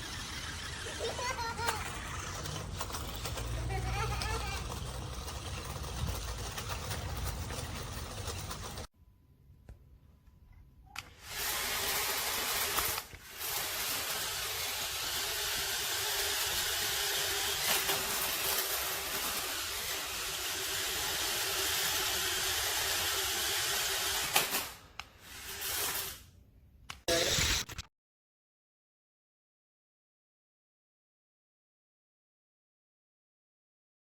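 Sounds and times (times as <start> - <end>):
toy car motors whirring: 0.0 - 8.9, 11.0 - 26.3, 27.1 - 27.9.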